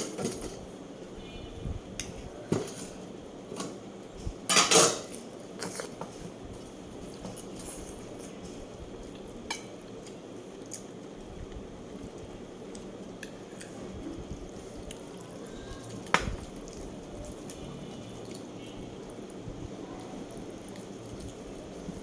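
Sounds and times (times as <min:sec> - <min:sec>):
cutlery clinking against a dish: 0:04.5 - 0:06.0.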